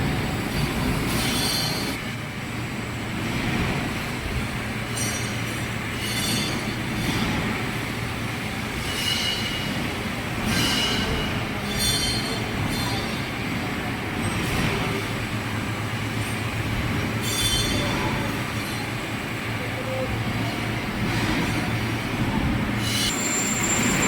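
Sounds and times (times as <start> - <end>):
cutting tool squealing: 22.8 - 24.0.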